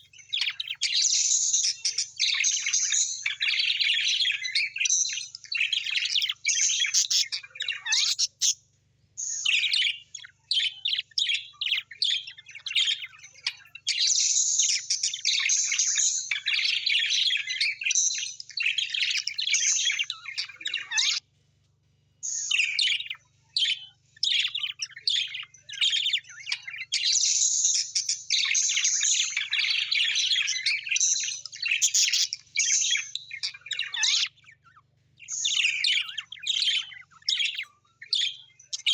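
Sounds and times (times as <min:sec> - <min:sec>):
birds chirping and twittering: 0:00.0 - 0:38.9.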